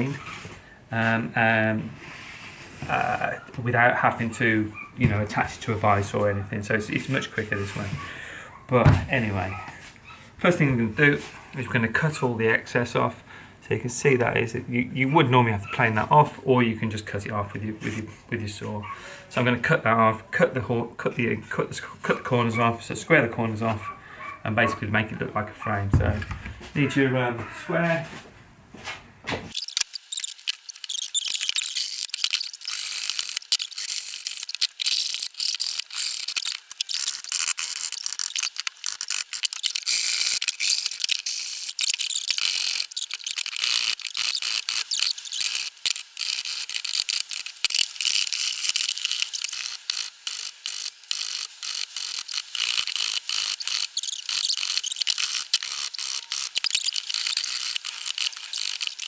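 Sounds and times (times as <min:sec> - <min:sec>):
hand tool rasping on wood: 0:29.6 - 0:59.0.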